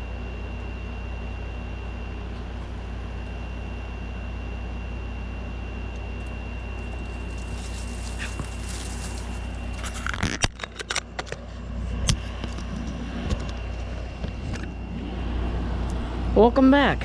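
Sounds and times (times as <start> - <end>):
window air conditioner humming: 0.0 - 17.0.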